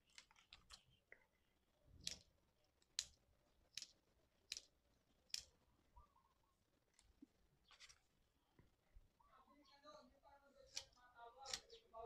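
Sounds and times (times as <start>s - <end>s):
small scissors snipping: 2.0s - 2.3s, 10.7s - 11.8s.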